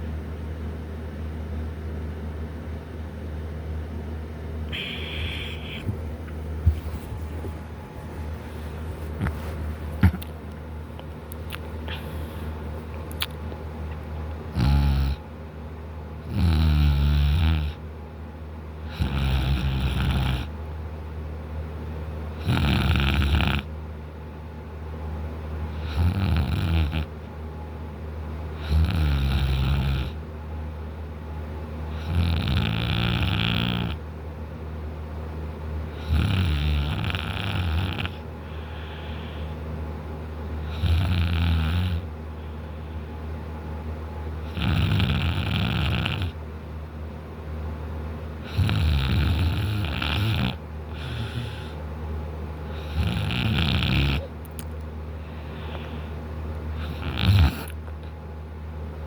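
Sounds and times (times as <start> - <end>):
quiet breathing: 4.7 - 10.2, 11.8 - 12.7, 38.4 - 39.7, 42.3 - 43.3, 50.9 - 51.9, 55.2 - 58.2
man snoring loudly: 14.6 - 15.2, 16.3 - 17.8, 18.9 - 20.5, 22.4 - 23.7, 25.8 - 27.1, 28.6 - 30.2, 32.0 - 34.0, 36.0 - 38.2, 40.7 - 42.1, 44.5 - 46.4, 48.5 - 51.8, 52.8 - 54.3, 56.8 - 57.8.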